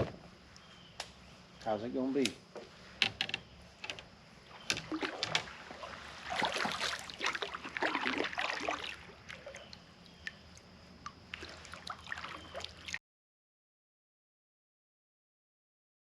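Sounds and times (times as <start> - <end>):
water splashing against kayak: 4.5 - 10.4.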